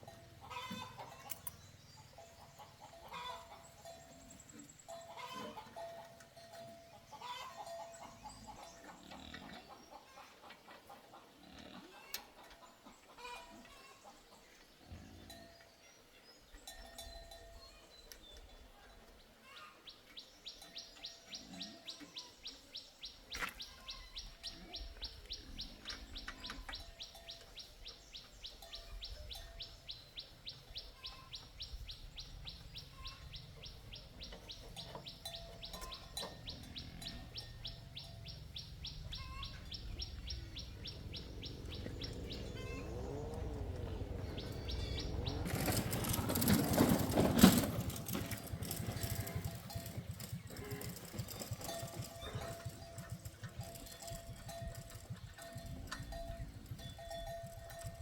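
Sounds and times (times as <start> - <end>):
bird chirping: 19.8 - 57.8
low rumble: 38.0 - 47.2.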